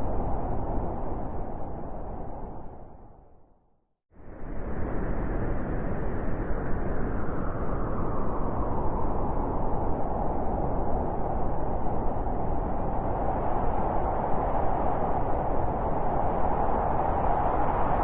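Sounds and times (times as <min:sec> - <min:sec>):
wind blowing: 0:00.0 - 0:03.3.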